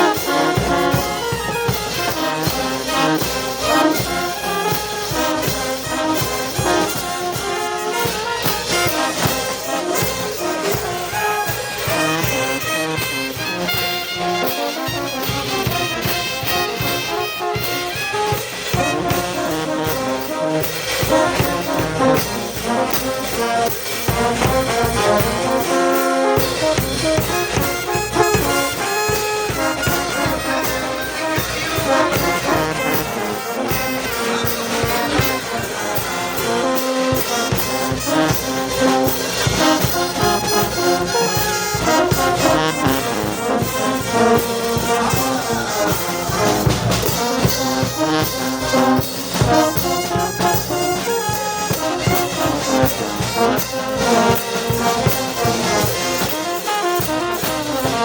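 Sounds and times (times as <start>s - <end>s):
brass band playing: 0.0s - 58.0s
steady drum beat: 0.0s - 58.0s
trumpets and trombones melody: 0.0s - 58.0s.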